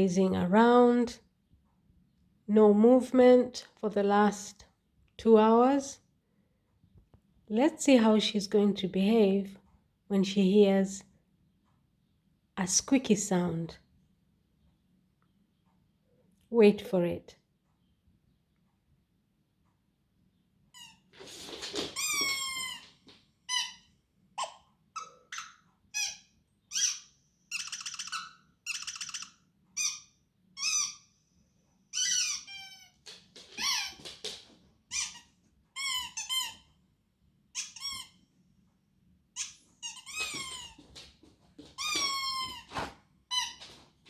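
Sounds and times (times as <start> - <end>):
squeaky toy squeaking: 22.0 - 22.9, 23.5 - 31.1, 31.9 - 33.0, 33.6 - 34.0, 34.9 - 36.8, 37.6 - 38.2, 39.4 - 40.9, 41.8 - 43.7.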